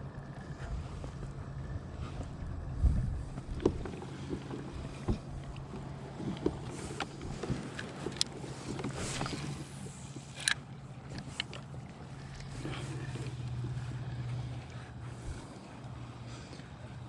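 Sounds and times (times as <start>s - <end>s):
low rumble: 0.0s - 7.9s, 11.7s - 17.0s
steady low hum: 0.0s - 17.0s
knocks and clicks against hull: 2.0s - 17.0s.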